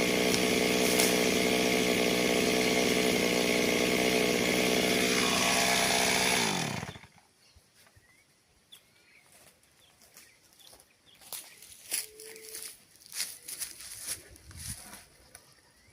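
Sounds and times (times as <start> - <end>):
chainsaw running: 0.0 - 7.2
faint bird chirps: 7.3 - 12.7.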